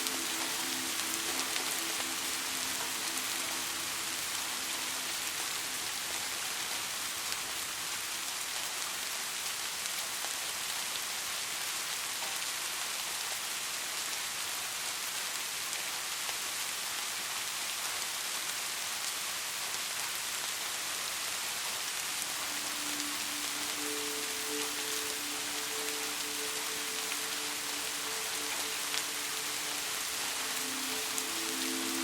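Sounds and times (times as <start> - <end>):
steady rain falling: 0.0 - 32.0.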